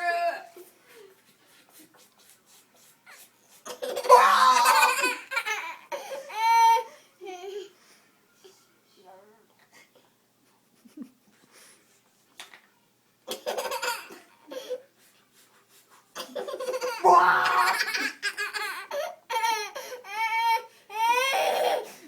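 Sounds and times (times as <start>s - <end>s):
baby laughing and giggling: 17.6s - 20.4s.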